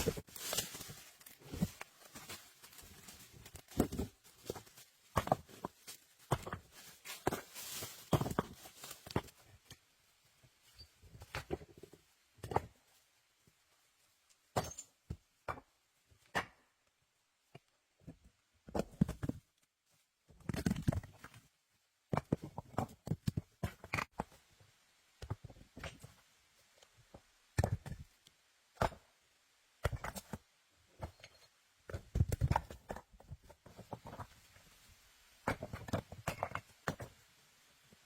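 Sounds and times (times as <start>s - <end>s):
knocks and thuds of branches and stones: 0.0s - 9.8s, 31.9s - 34.7s, 35.4s - 37.2s.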